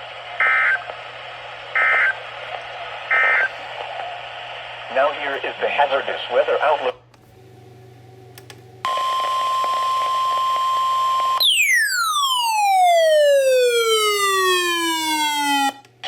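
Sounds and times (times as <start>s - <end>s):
radio static: 0.0s - 7.0s
steady high alarm tone: 8.9s - 15.8s.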